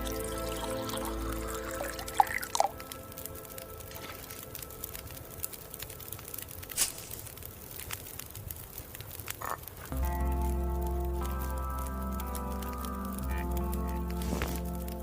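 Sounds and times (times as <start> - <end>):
background music: 0.0 - 6.4, 9.9 - 15.0
tea sipping clicks and crackles: 0.0 - 15.0.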